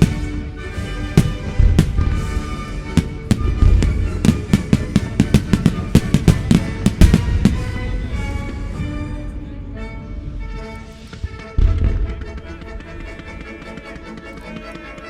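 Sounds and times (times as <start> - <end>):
fireworks banging: 0.0 - 8.5
music playing: 0.0 - 15.0.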